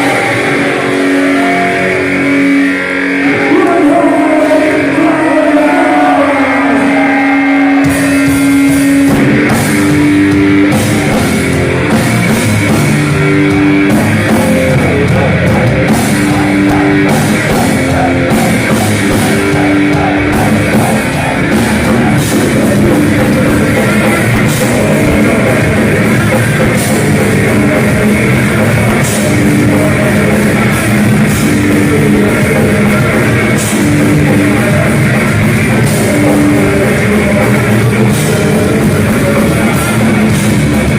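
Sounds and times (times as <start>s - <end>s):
distorted electric guitar riff: 0.0s - 40.9s
drum kit: 0.0s - 40.9s.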